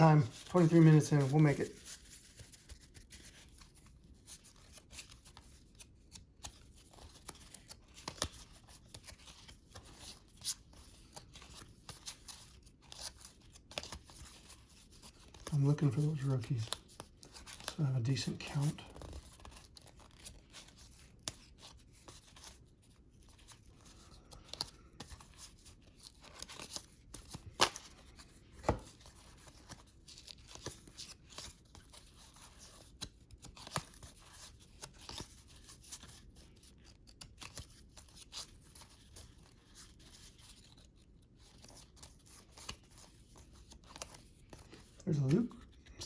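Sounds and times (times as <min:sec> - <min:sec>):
cards scraping and flicking: 0:00.0 - 0:22.6, 0:23.3 - 0:36.2.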